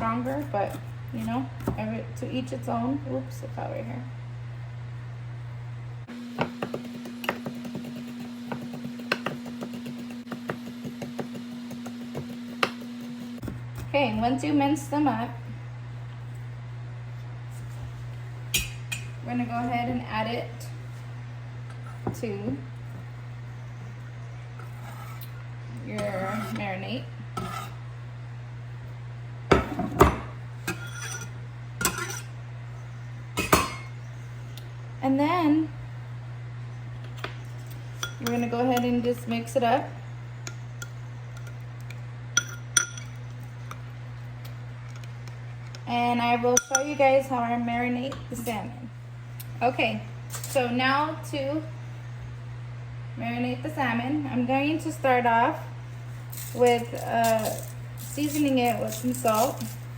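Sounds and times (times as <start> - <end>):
low steady hum: 0.0 - 59.9
utensil clinking against bowl: 38.0 - 39.0, 42.4 - 43.8, 46.5 - 47.0, 56.4 - 59.8.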